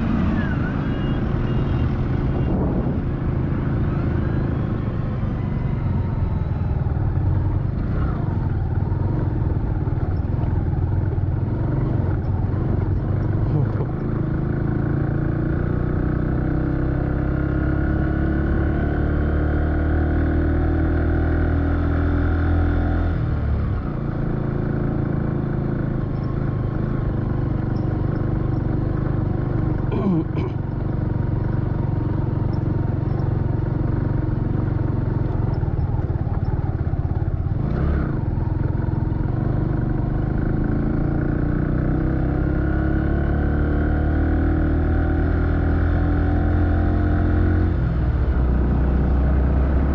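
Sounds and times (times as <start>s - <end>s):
vehicle engine running: 0.0s - 16.4s, 23.2s - 43.7s.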